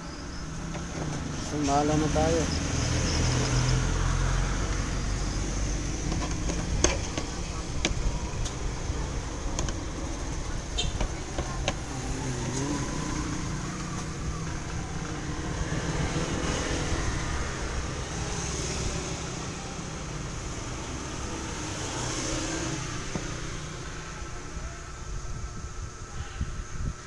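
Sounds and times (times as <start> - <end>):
vehicle engine rumbling: 0.0 - 27.0.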